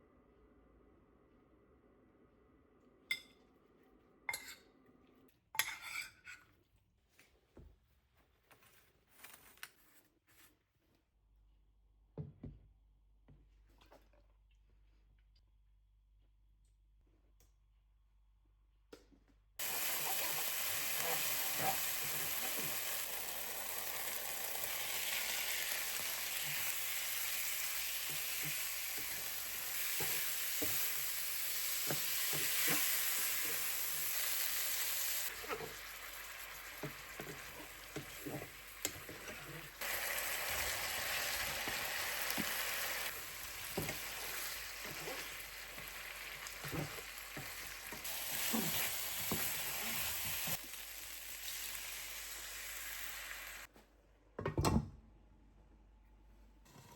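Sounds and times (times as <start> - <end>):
food sizzling in hot oil: 19.6 - 53.7.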